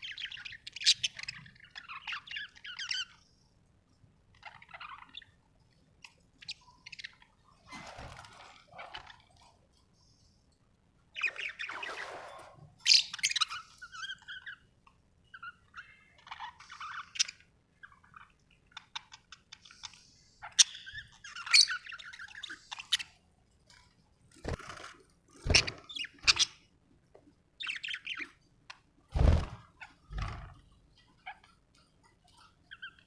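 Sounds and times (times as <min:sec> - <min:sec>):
budgerigars chirping and chattering: 0:00.0 - 0:03.2, 0:04.4 - 0:05.3, 0:11.1 - 0:12.1, 0:12.8 - 0:14.6, 0:15.3 - 0:23.2, 0:25.5 - 0:26.6, 0:27.6 - 0:28.4.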